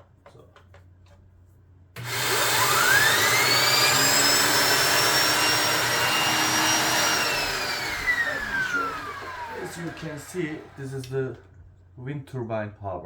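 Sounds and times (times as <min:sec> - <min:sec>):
vacuum cleaner motor whine: 0:02.0 - 0:11.4.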